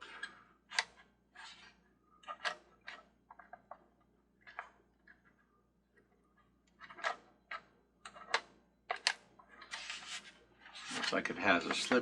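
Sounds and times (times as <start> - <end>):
plastic gearbox clicking: 6.7 - 9.2.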